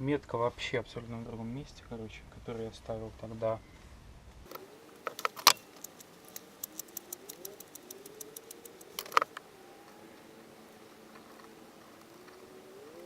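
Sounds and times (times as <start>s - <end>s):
metal tool clicking: 5.1s - 9.3s.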